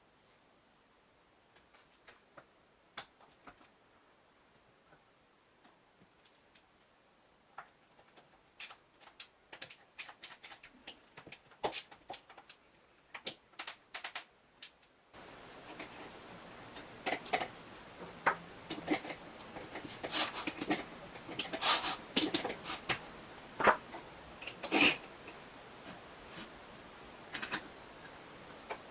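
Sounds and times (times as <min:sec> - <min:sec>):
hissy background: 0:14.4 - 0:28.9.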